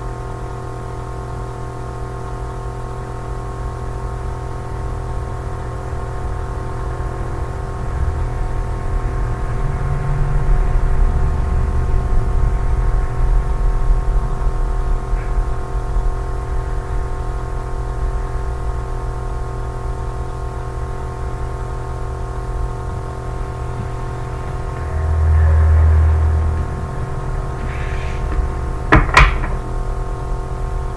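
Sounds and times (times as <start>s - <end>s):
low drone with held tones: 4.2s - 30.9s
deep hum: 21.4s - 30.9s.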